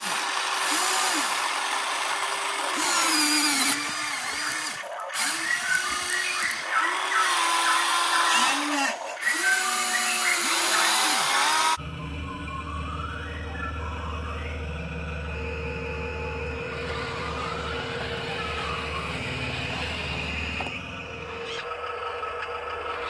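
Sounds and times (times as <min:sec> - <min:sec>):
electric motor and pump whining: 0:00.0 - 0:23.0
music: 0:11.8 - 0:20.8.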